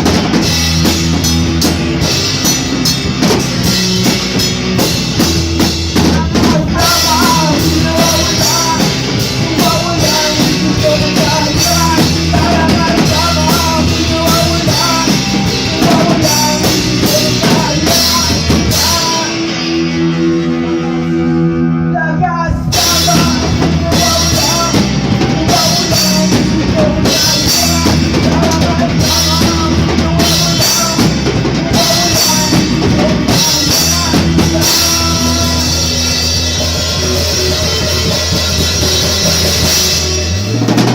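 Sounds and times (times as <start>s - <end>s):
drum kit: 0.0s - 21.4s, 22.2s - 40.9s
rock band playing: 0.0s - 40.9s.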